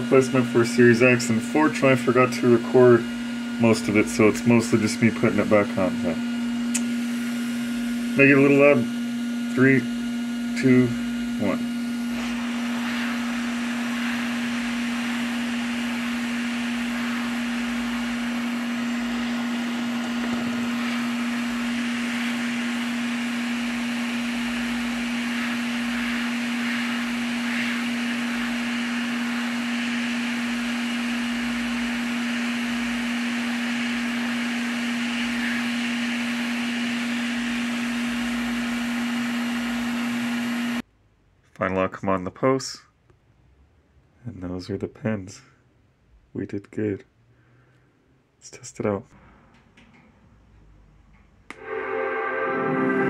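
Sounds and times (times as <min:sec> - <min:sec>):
electric fan motor humming: 0:00.0 - 0:40.9.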